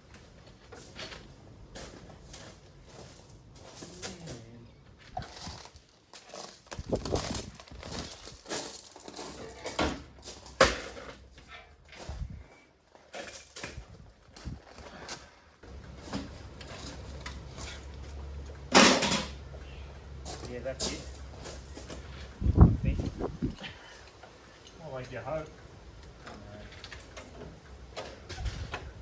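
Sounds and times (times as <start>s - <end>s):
metal tools clinking and clanking: 13.0s - 14.0s, 15.8s - 19.5s.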